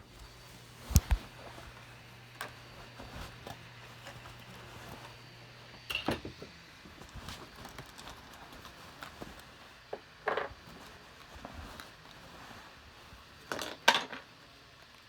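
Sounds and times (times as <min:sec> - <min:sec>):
low steady hum: 0:00.0 - 0:15.0
light handling taps and clicks: 0:00.2 - 0:05.1.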